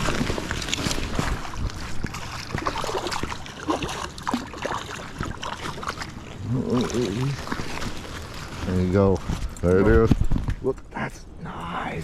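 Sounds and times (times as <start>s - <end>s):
fish splashing in water: 0.0s - 8.5s
stream water running: 0.0s - 10.1s.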